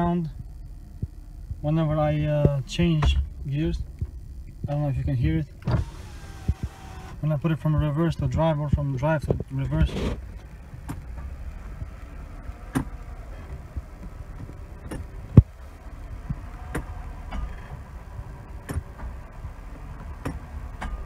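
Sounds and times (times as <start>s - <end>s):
car engine idling: 0.0s - 21.0s
sharp metallic clicks: 5.6s - 7.3s.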